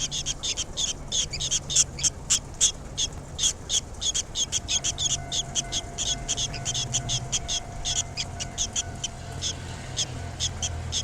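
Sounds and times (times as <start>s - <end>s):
swallows chirping: 0.0s - 11.0s.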